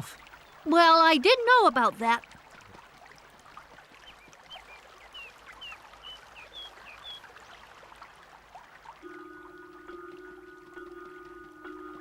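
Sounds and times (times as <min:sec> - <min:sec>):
small bird chirping: 0:04.0 - 0:07.2.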